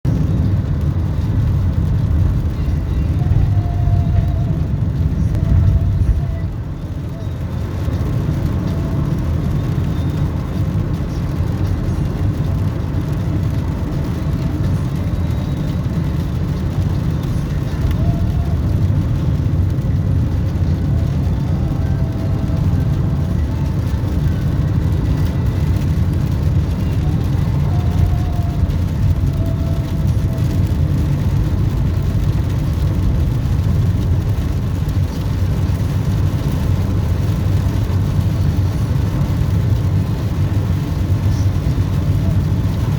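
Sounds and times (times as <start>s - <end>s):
vehicle engine and road rumble: 0.0s - 42.9s.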